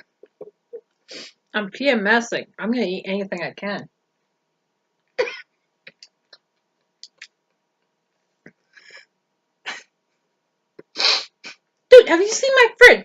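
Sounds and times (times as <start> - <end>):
person coughing: 5.2 - 5.5
mouth clicks: 7.0 - 7.4.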